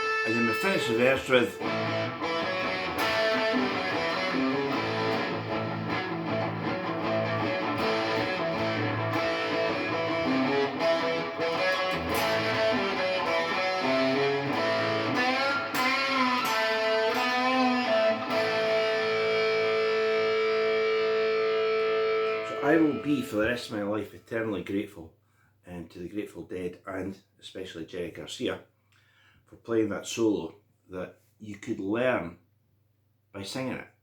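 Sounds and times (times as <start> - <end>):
blues guitar lead: 0.0 - 23.8.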